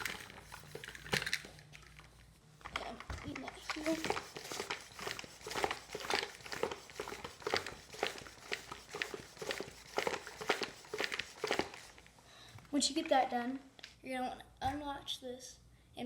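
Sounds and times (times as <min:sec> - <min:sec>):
hand pump hissing strokes: 0:03.6 - 0:12.0.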